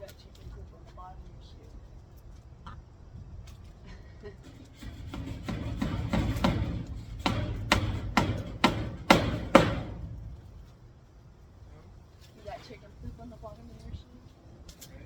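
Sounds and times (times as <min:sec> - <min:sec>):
sharp knocks: 0:04.8 - 0:10.6.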